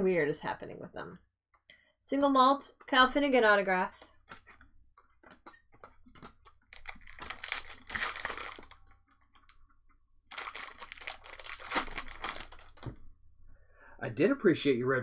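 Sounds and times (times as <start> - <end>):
cards clicking and rustling: 6.2 - 9.6, 10.3 - 12.9
wrappers crinkling and tearing: 6.7 - 9.6, 10.3 - 12.9.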